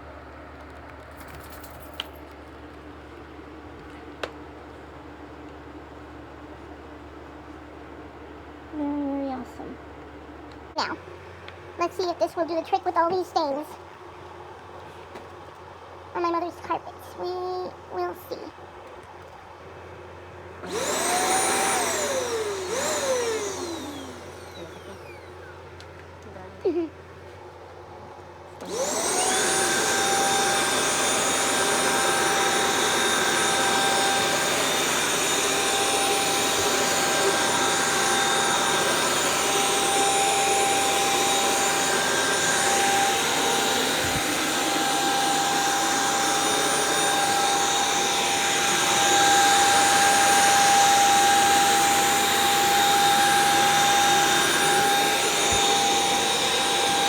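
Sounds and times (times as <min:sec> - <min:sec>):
carpet cleaner motor whining: 0:20.3 - 0:26.8, 0:28.5 - 0:57.0.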